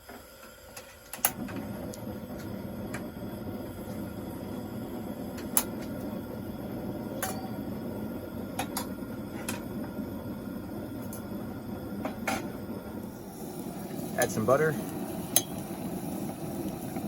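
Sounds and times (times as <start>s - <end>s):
cooking pots and utensils clinking: 7.2s - 7.8s.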